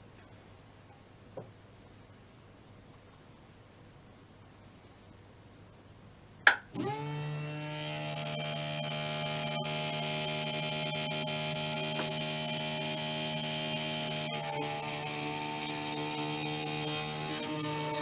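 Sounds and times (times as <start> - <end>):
electric motor humming: 6.8 - 18.0.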